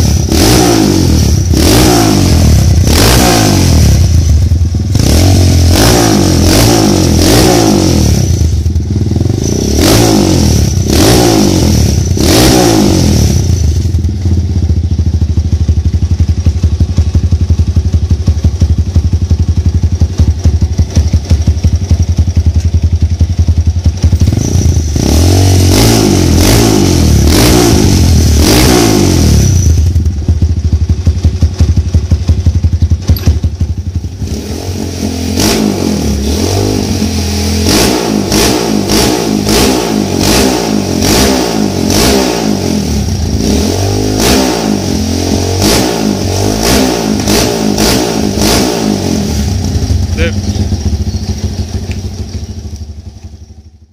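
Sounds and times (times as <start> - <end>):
motorcycle engine revving and idling: 0.0 - 53.9.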